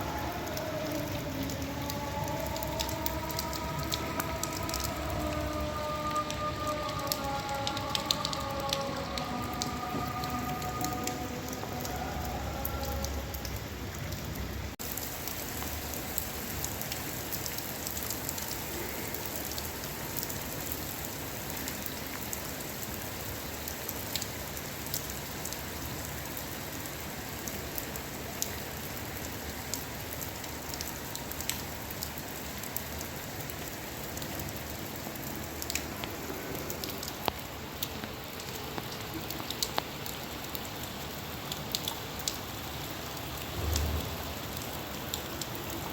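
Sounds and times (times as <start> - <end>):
raindrops ticking on hard surface: 0.0 - 45.9
steady rain hiss: 0.0 - 45.9.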